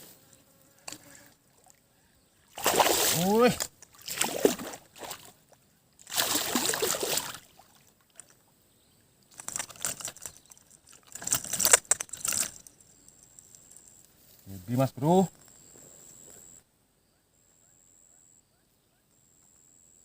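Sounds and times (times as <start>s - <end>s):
fish splashing and thrashing in water: 2.5s - 5.4s, 6.0s - 8.4s, 9.3s - 12.7s.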